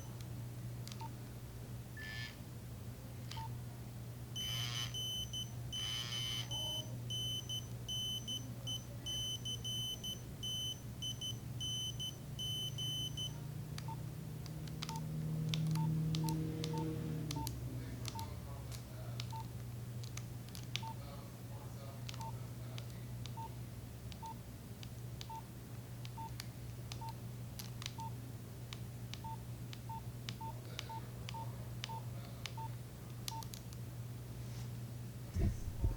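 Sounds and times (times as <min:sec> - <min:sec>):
low steady hum: 0:00.0 - 0:35.9
pulsing high-pitched phone tone: 0:04.4 - 0:08.4
keypad beeps with button clicks: 0:04.4 - 0:14.0, 0:14.8 - 0:15.0, 0:15.7 - 0:18.3, 0:19.3 - 0:19.5, 0:24.1 - 0:24.4, 0:25.2 - 0:25.4, 0:26.1 - 0:26.3, 0:26.9 - 0:27.2, 0:27.9 - 0:28.2, 0:29.2 - 0:32.7, 0:33.3 - 0:33.6.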